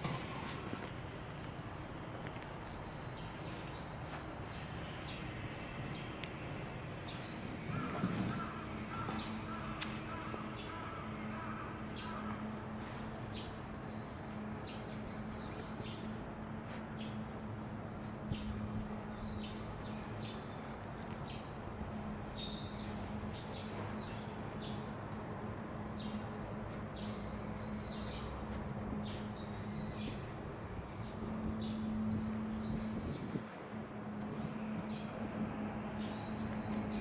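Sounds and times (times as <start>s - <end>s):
faint outdoor background noise: 0.0s - 37.0s
steady low hum: 0.0s - 37.0s
small birds chirping: 1.5s - 5.3s, 13.3s - 16.2s, 17.8s - 33.4s, 34.3s - 37.0s.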